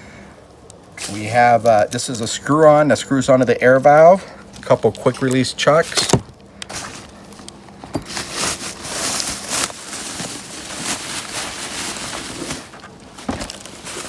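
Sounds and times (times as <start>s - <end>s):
packaging rustling: 4.4s - 14.0s.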